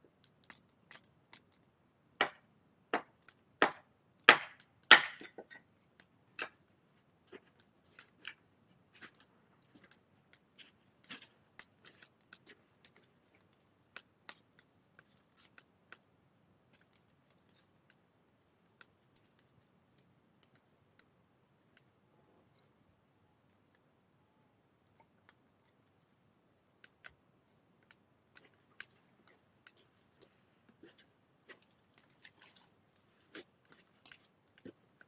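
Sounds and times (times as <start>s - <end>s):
firewood cracking and clicking: 0.2s - 1.6s.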